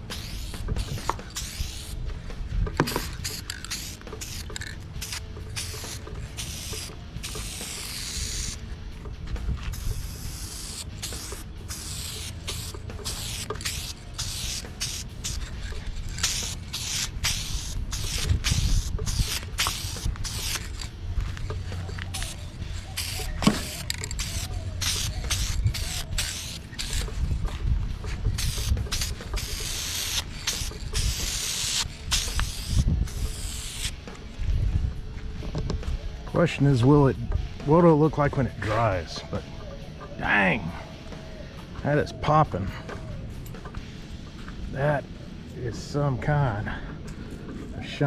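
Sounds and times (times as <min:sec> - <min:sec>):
aerosol can spraying: 0:00.0 - 0:34.8.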